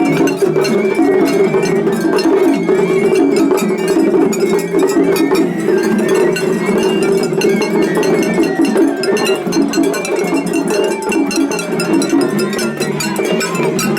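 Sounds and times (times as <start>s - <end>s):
bamboo flute melody: 0.0s - 13.9s
hand gong clanging rhythm: 0.0s - 13.9s
taiko drums: 0.0s - 13.9s.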